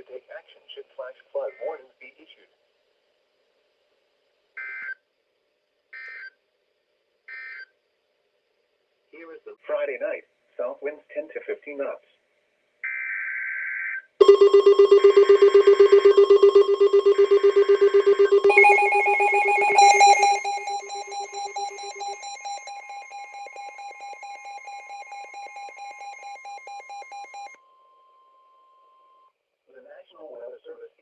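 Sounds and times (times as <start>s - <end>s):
rapidly pulsing ringing alarm: 14.2s - 27.6s.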